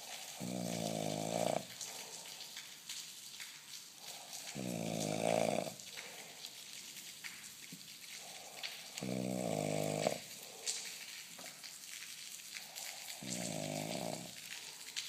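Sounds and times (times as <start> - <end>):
man snoring: 0.4 - 1.7, 4.5 - 5.8, 9.0 - 10.2, 13.2 - 14.3.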